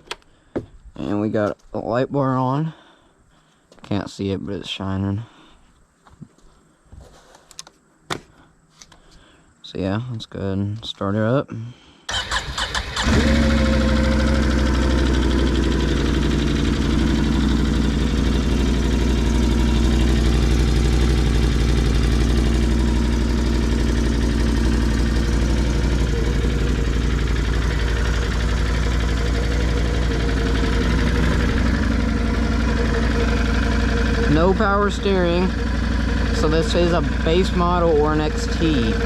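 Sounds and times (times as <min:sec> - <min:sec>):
engine idling: 0:12.1 - 0:39.0.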